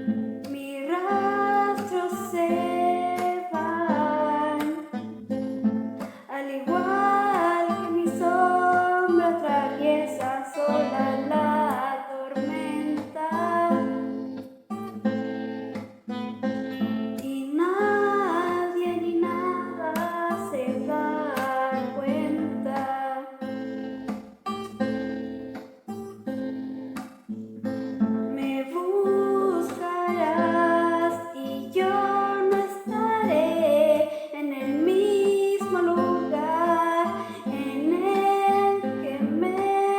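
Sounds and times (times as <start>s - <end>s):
acoustic guitar: 0.0s - 39.9s
person singing: 0.5s - 4.9s, 6.0s - 14.2s, 17.2s - 23.4s, 28.4s - 39.9s.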